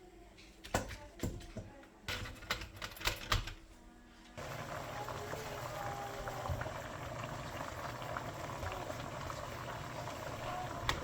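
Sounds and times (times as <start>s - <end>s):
kitchen utensils and dishes clicking: 0.6s - 3.6s
pot boiling: 4.4s - 11.0s.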